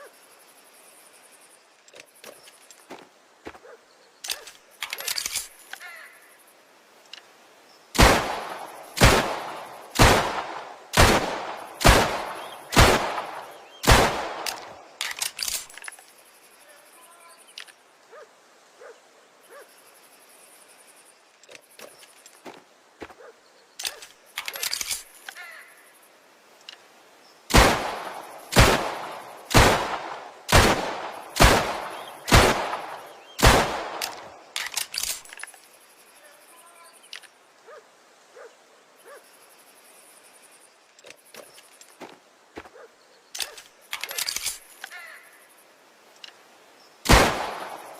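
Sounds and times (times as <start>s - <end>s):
pistol firing single shots: 8.0s - 15.4s, 27.5s - 35.3s, 47.0s - 47.9s
faint clicks: 26.6s - 26.9s, 37.0s - 37.4s, 46.1s - 46.4s.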